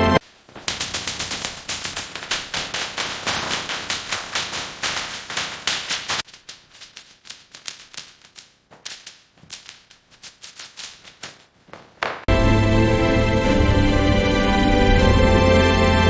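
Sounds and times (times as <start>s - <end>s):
music with deep bass: 12.3s - 16.0s.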